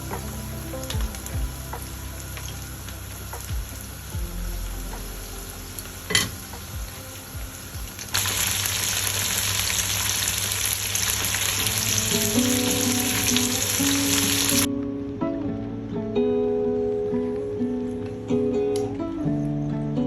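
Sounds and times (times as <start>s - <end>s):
plucked guitar music: 0.0s - 8.1s, 11.6s - 20.0s
food sizzling in a pan: 0.0s - 14.7s.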